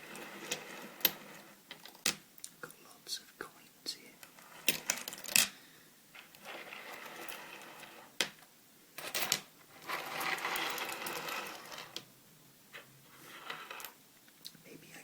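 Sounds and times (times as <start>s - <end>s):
coins rustling and scraping: 0.0s - 2.2s, 4.3s - 5.6s, 6.2s - 8.1s, 9.0s - 12.0s, 12.7s - 14.0s
coins clinking: 9.0s - 12.0s.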